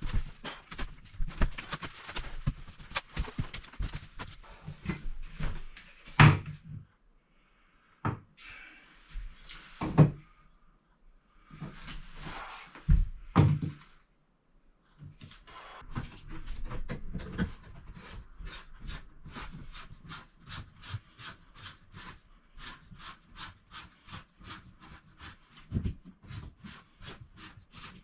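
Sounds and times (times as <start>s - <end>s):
scraping or rustling: 0.0s - 4.5s.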